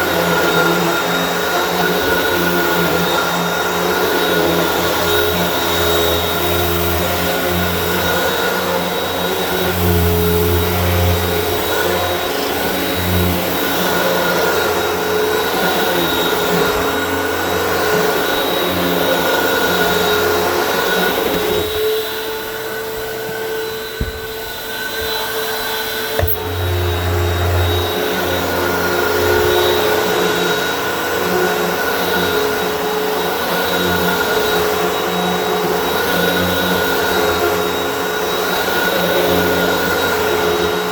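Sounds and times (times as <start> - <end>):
vacuum cleaner motor whine: 0.0 - 40.9
vacuum head rumbling on floor: 23.0 - 25.3.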